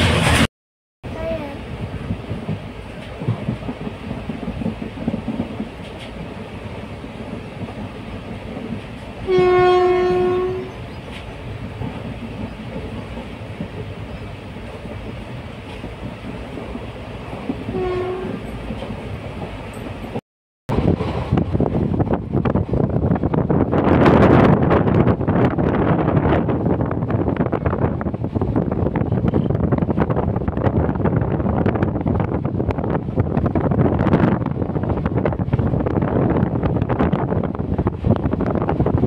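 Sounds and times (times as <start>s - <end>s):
train rumbling: 0.0s - 39.0s
train horn: 9.3s - 10.8s, 17.7s - 18.5s.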